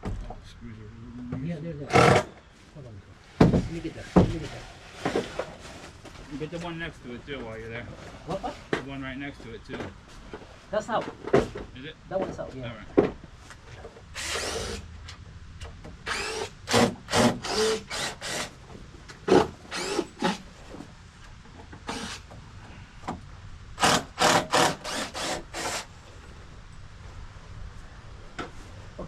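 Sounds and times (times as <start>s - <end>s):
hand tool scraping wood: 19.3s - 20.7s, 21.9s - 22.3s, 23.8s - 25.9s.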